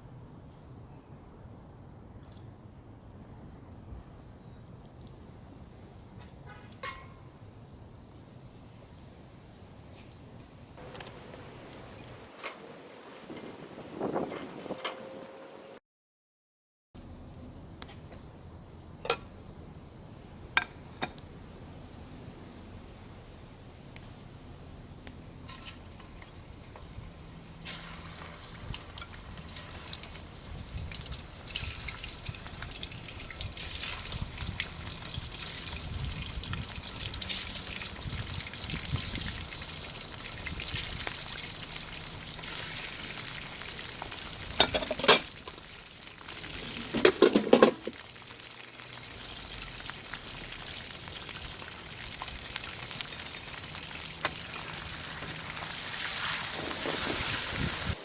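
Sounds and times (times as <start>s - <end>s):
food sizzling in hot oil: 25.5s - 58.0s.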